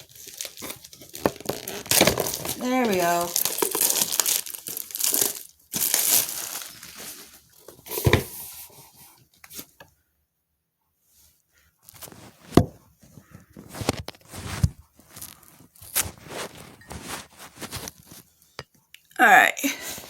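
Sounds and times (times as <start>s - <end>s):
cardboard box rustling: 0.0s - 9.7s.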